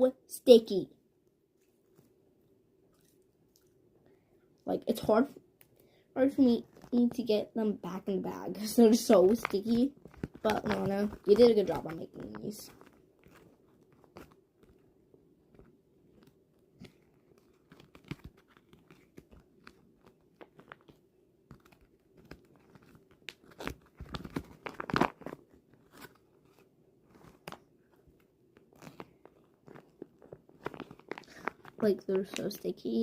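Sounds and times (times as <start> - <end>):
small clicks and crackles: 6.6 - 7.2, 8.6 - 33.0.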